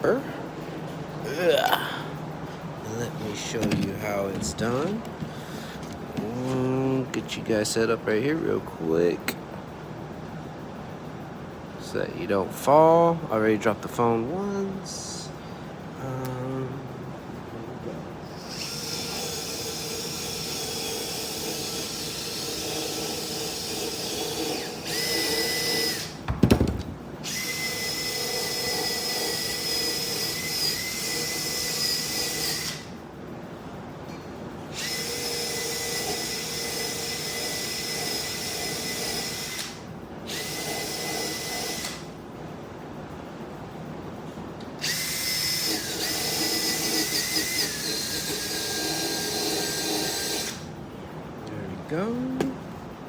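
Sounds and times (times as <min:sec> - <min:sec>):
electric drill running: 0:18.3 - 0:33.0, 0:34.7 - 0:42.1, 0:44.8 - 0:50.7
loud knock: 0:26.3 - 0:27.0.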